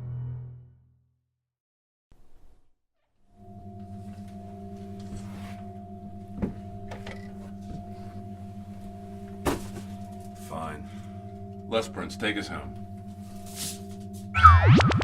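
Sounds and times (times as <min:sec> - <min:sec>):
electronic drone of held tones: 0:03.3 - 0:15.0.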